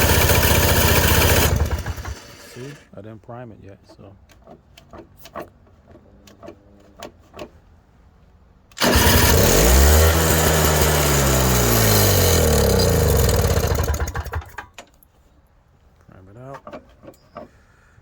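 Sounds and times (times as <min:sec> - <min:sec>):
electric starter cranking engine: 0:00.0 - 0:02.9, 0:08.7 - 0:14.8.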